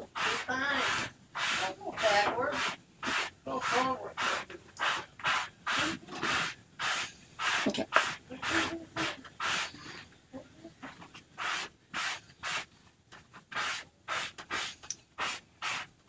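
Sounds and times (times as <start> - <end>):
short scraping strokes: 0.1 - 9.8.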